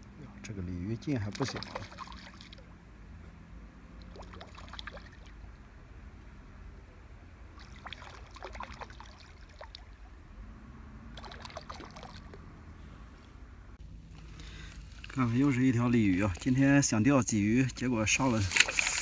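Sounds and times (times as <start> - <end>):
water splashing and trickling: 1.1 - 2.8, 3.8 - 6.0, 7.4 - 10.3, 11.0 - 13.1, 14.0 - 19.0.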